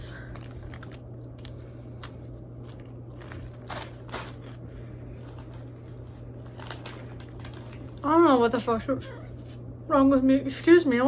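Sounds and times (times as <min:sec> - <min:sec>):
cracker crunching: 0:00.2 - 0:08.1.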